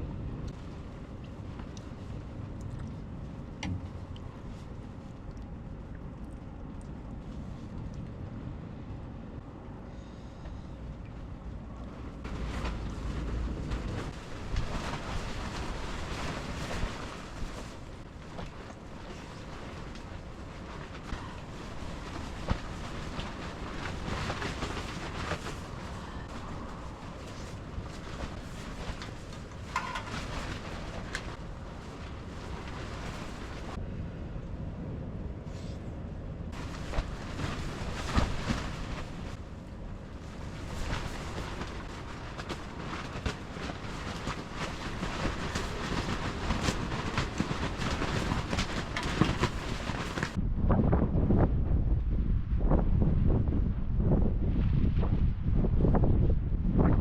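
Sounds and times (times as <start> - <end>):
strong wind buffeting microphone: 10.8 - 57.0
knocks and rattles: 27.2 - 31.4.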